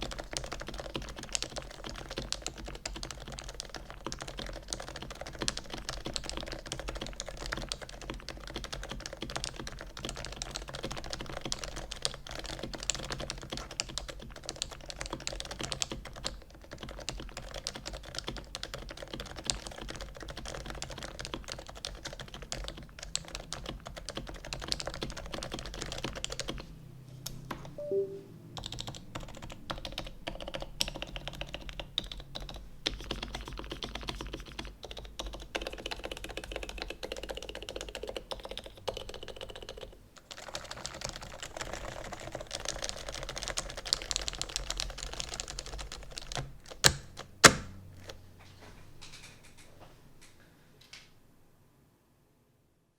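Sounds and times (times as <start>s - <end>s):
keyboard typing thocks: 45.0s - 48.2s.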